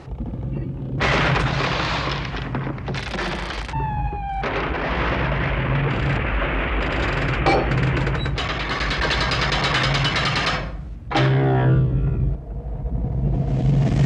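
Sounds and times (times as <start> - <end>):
steady low hum: 10.8 - 14.0.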